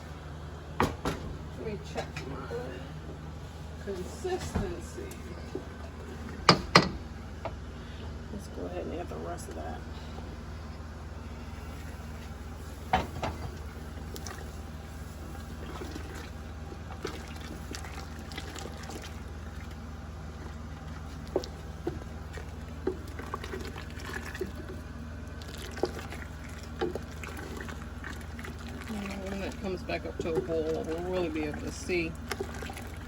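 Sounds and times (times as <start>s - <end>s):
steady low hum: 0.0s - 33.0s
liquid sloshing in a pot: 9.4s - 33.0s.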